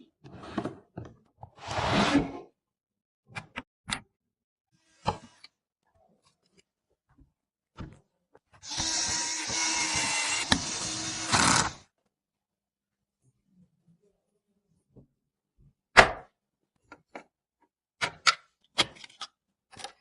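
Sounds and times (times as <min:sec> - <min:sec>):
clicks and knocks of parts handled: 0:18.0 - 0:20.0.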